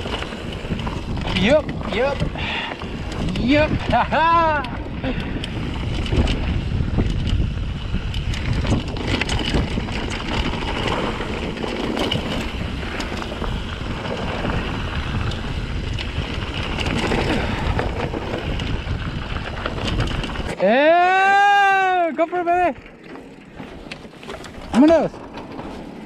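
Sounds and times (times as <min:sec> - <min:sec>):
wind buffeting microphone: 0:00.0 - 0:20.7
bike rattling over rocks: 0:00.0 - 0:26.0.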